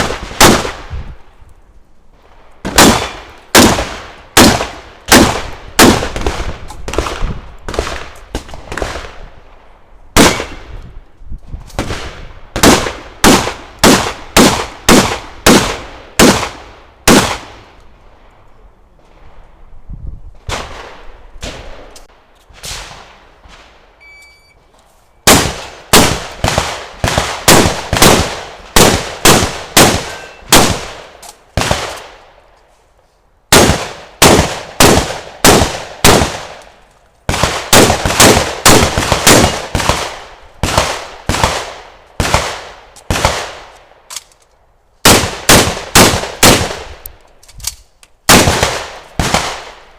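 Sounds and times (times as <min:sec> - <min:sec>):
shotgun shots echoing: 0:00.0 - 0:00.9, 0:02.6 - 0:09.2, 0:10.2 - 0:10.7, 0:11.8 - 0:17.6, 0:25.3 - 0:32.2, 0:33.5 - 0:36.6, 0:37.3 - 0:43.7, 0:45.0 - 0:47.0, 0:48.3 - 0:49.9.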